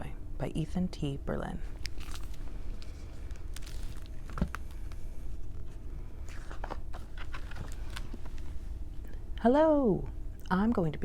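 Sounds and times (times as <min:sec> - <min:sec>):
steady low hum: 0:00.0 - 0:11.0
paper rustling: 0:01.7 - 0:08.9.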